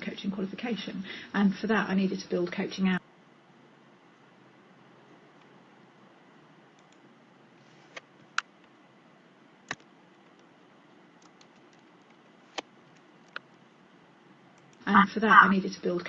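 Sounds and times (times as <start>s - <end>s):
faint steady hiss: 0.0s - 16.0s
computer keyboard clicks: 11.2s - 12.2s.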